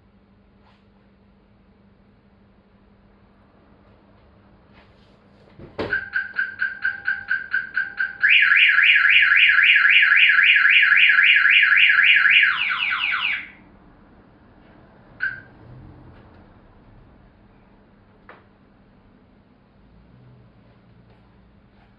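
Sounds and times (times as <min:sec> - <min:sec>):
car alarm siren: 0:05.8 - 0:13.6, 0:15.2 - 0:15.5.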